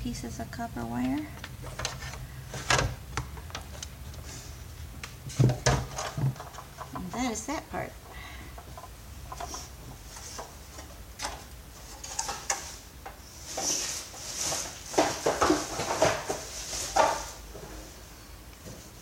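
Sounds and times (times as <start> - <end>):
sharp clicks and knocks: 1.0 - 4.2, 5.0 - 7.6.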